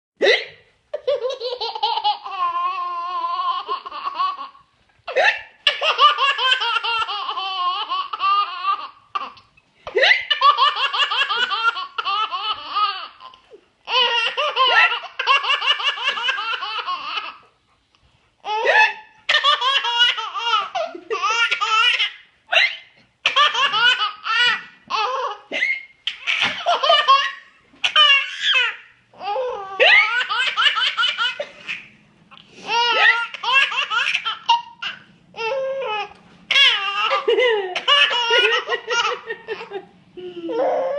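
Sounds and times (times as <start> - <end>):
woman hiccuping: 0.2 - 0.6
baby belly-laughing: 0.2 - 17.5, 18.4 - 31.9, 32.7 - 40.9.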